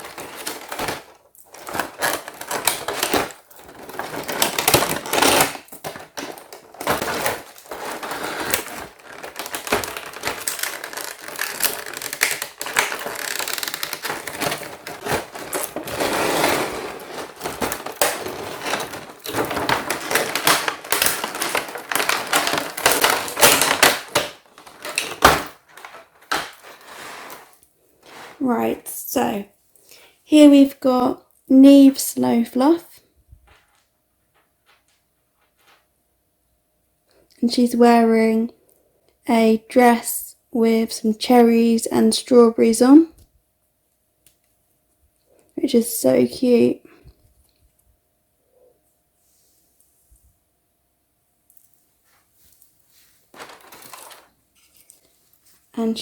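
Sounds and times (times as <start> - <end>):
plastic pieces clicking: 0.0 - 26.9, 53.3 - 55.0
plastic packaging crinkling: 0.0 - 28.7, 52.5 - 56.0.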